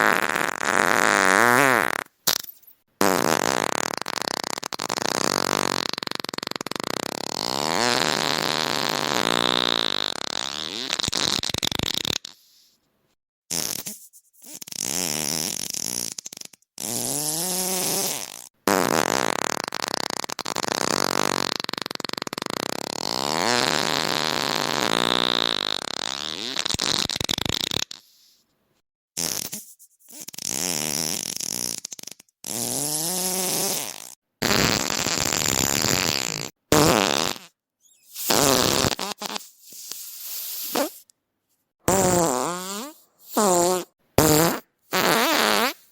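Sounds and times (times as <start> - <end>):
long drawn-out farts: 30.4 - 37.5, 41.9 - 45.9.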